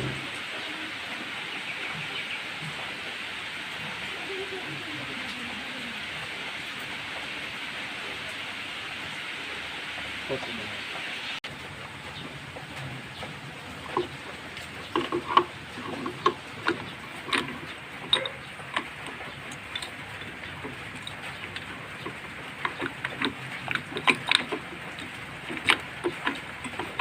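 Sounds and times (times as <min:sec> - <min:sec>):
hand tools clicking and tapping: 0:13.7 - 0:27.0.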